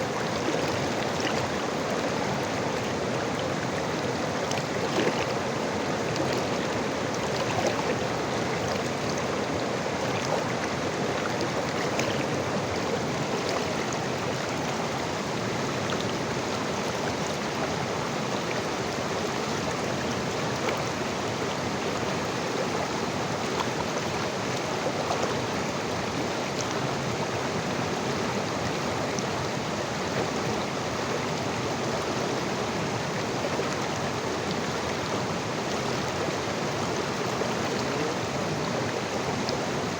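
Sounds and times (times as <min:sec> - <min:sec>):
river water flowing: 0:00.0 - 0:39.9
small water splashes: 0:00.1 - 0:14.8, 0:23.4 - 0:26.8.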